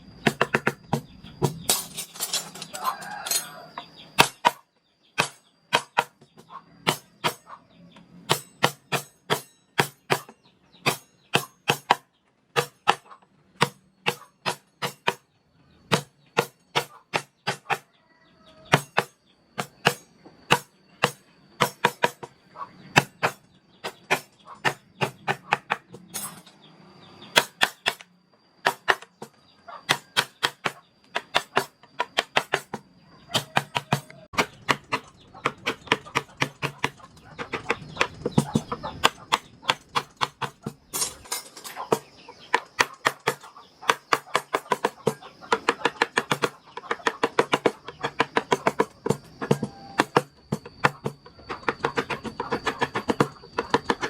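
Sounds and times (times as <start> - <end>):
mallet striking chisel into wood: 4.2 - 4.6, 5.2 - 6.2, 8.3 - 12.0, 15.9 - 17.9, 18.7 - 22.3, 27.4 - 29.3, 29.9 - 41.0, 41.9 - 54.0.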